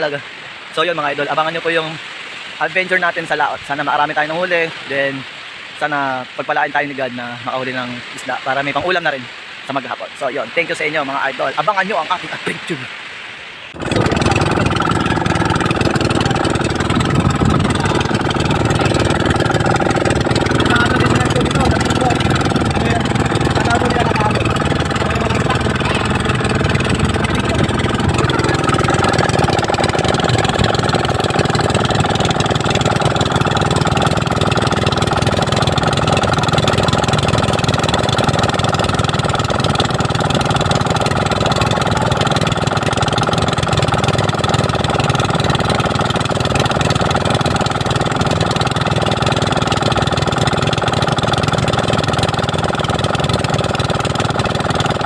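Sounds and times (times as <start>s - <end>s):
boat engine running: 13.7s - 55.0s.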